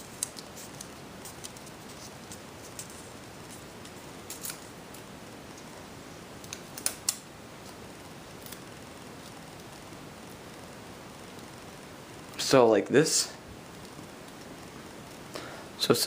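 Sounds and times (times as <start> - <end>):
steady hiss: 0.0 - 16.0.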